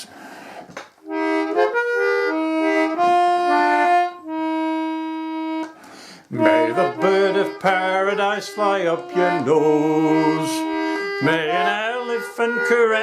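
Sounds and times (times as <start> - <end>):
free-reed instrument playing chords: 1.0 - 13.0.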